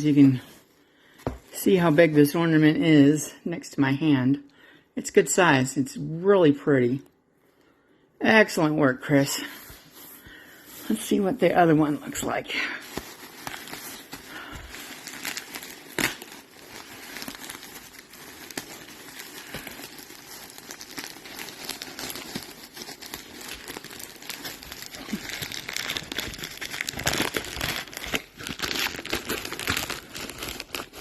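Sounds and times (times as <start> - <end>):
packaging crinkling and rustling: 11.7 - 31.0.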